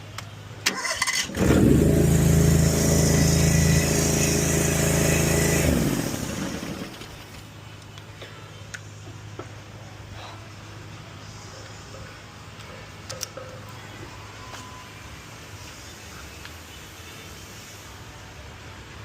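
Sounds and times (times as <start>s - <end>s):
engine starting and running: 0.6s - 7.6s.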